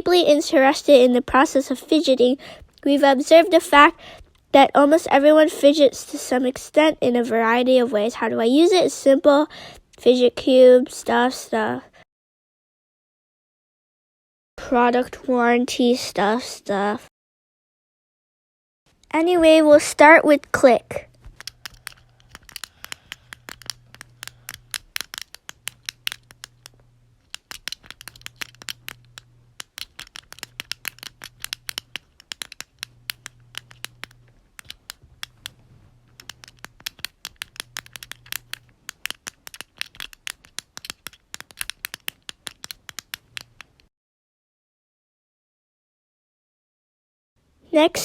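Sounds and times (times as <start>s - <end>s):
plastic buttons clicking: 21.1s - 43.8s.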